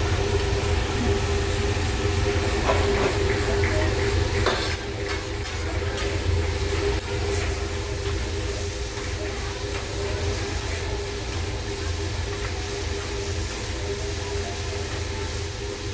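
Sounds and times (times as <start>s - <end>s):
food sizzling on a griddle: 0.0s - 15.9s.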